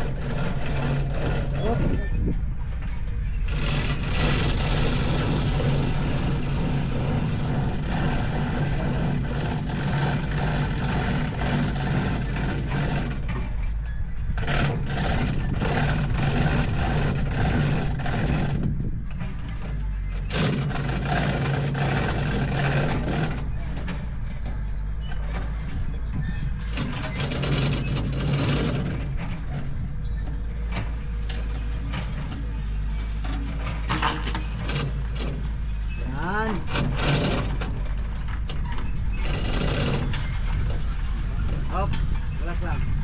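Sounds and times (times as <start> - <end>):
diesel engine idling: 0.0 - 26.0.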